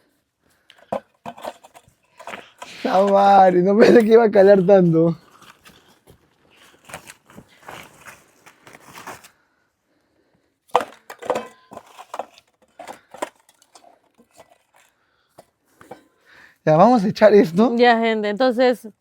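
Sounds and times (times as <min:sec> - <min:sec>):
firewood knocks and clinks: 0:00.7 - 0:03.2, 0:10.7 - 0:16.1
paper crinkling: 0:03.9 - 0:09.4.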